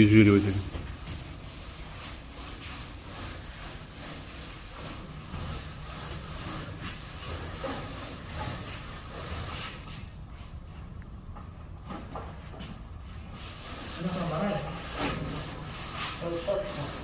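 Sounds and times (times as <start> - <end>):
rubbing strokes on floor: 0.0 - 10.8, 12.4 - 17.0.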